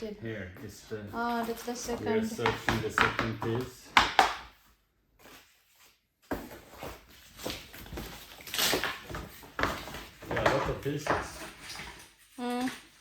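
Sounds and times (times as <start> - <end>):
furniture panels rustling and scraping: 5.2 - 12.2.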